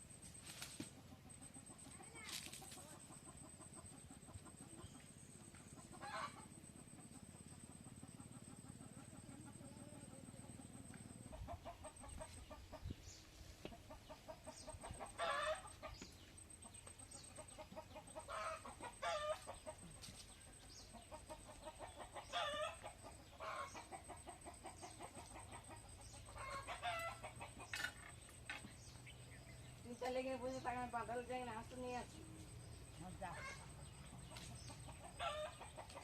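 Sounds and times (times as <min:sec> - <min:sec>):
rapid low clucks: 0:00.8 - 0:29.5, 0:33.6 - 0:36.0
chicken clucking loudly: 0:01.0 - 0:13.0, 0:13.6 - 0:29.6, 0:32.8 - 0:36.0.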